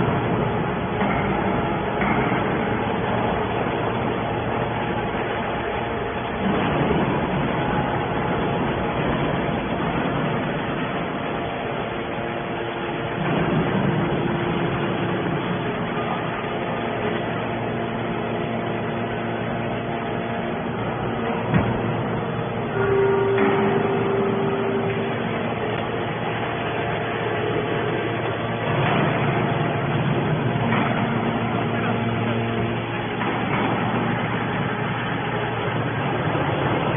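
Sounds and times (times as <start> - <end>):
hydraulic baler running: 0.0 - 36.9.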